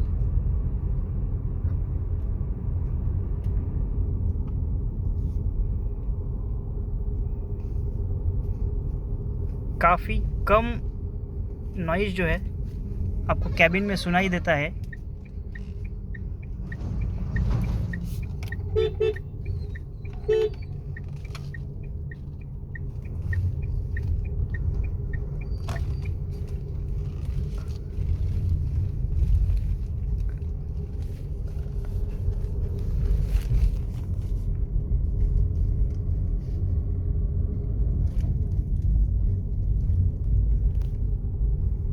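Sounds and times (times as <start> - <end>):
car engine and road rumble: 0.0 - 41.9
car horn toots: 16.9 - 20.8.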